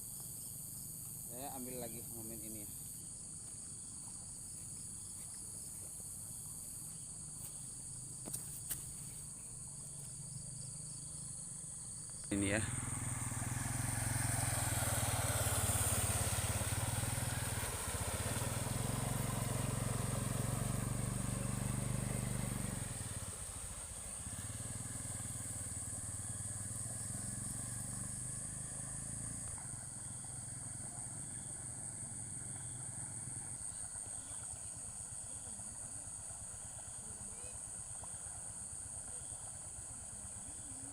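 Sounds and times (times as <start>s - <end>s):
motorcycle engine running: 3.2s - 40.9s
steady high hiss: 8.5s - 29.4s.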